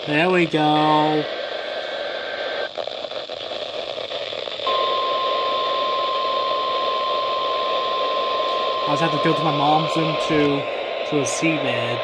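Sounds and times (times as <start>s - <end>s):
radio hiss: 0.0s - 12.0s
steady alarm tone: 4.6s - 12.0s.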